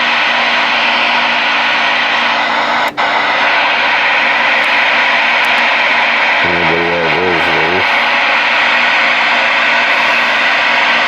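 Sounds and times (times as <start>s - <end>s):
radio static hiss: 5.5s - 8.4s.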